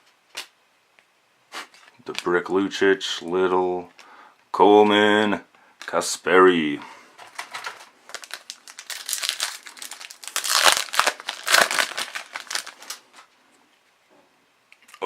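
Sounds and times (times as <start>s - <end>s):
foil wrapper crinkling and tearing: 7.2s - 13.3s.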